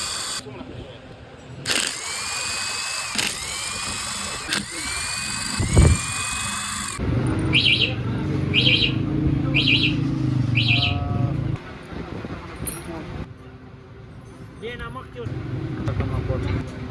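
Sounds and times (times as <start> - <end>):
power drill whirring: 0.0 - 0.4, 1.7 - 7.0.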